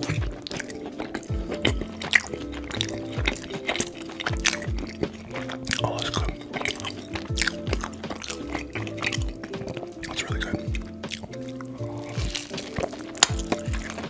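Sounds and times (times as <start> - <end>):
background music with bass thumps: 0.0 - 14.0
wet chewing and squelching: 0.0 - 14.0.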